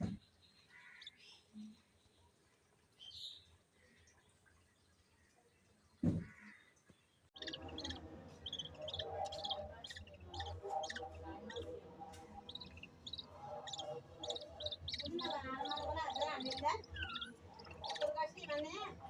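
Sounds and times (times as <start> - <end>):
thump: 0.0 - 0.2, 6.0 - 6.4
budgerigars chirping: 7.4 - 19.0.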